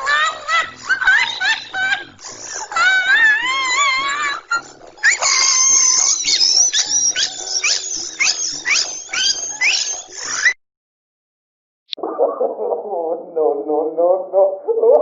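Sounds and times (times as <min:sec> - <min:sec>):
cartoon laughing sound effect: 0:00.0 - 0:10.6.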